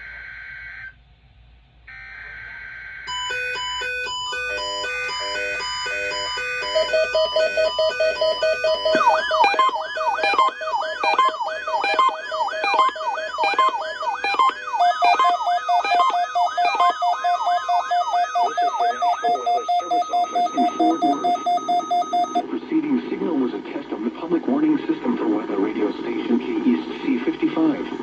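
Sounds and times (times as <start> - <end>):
steady electronic tones: 3.1 - 22.5.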